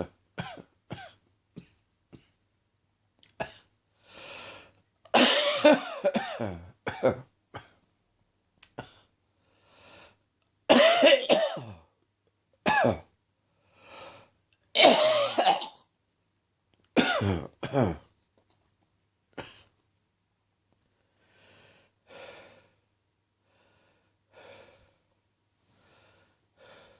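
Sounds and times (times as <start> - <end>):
person coughing: 0.0 - 2.4, 5.1 - 7.8, 10.7 - 11.9, 12.7 - 13.1, 14.8 - 15.8, 17.0 - 18.1.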